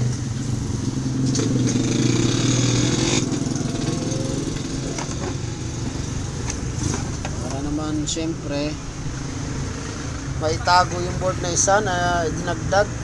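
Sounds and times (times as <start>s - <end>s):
small engine running: 1.3s - 5.7s.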